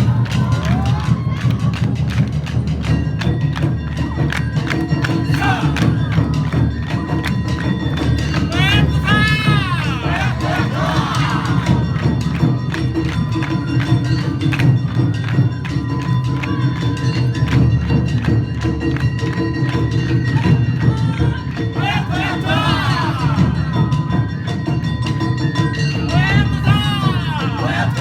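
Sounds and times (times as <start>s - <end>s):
drums and metal gongs: 0.0s - 28.0s
group chanting: 5.1s - 6.1s, 8.4s - 12.1s, 20.9s - 23.8s, 26.1s - 28.0s.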